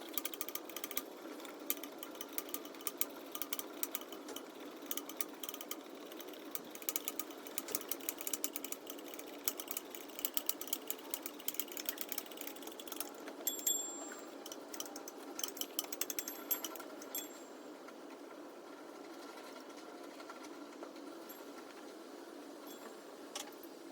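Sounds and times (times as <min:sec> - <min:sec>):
ratchet wrench clicking: 0:00.0 - 0:13.7, 0:14.4 - 0:17.3.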